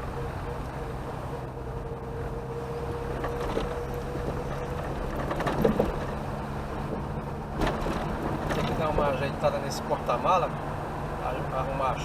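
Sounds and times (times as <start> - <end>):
car engine and road noise: 0.0 - 12.0
clutter knocking and rattling: 3.2 - 6.2.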